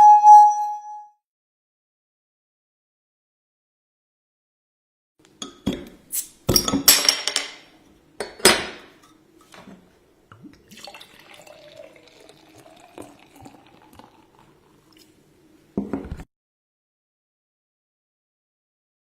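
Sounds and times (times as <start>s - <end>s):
liquid pouring into a glass: 10.4s - 15.1s
glasses clinking: 10.8s - 14.2s.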